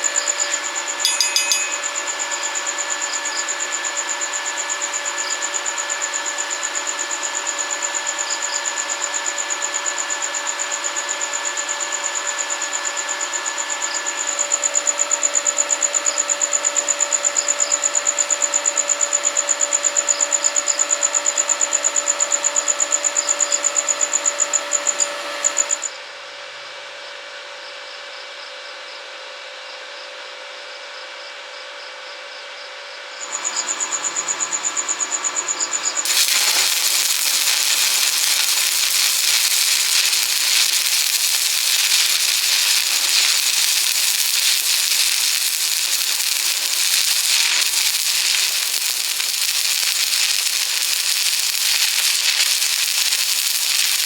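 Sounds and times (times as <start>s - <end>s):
welding arc crackling: 36.0s - 54.0s.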